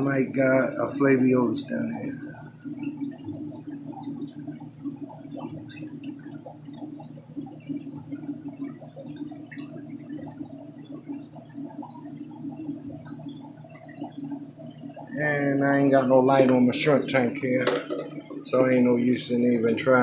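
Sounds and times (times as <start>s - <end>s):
aquarium water bubbling: 0.0s - 20.0s
low steady hum: 0.0s - 20.0s.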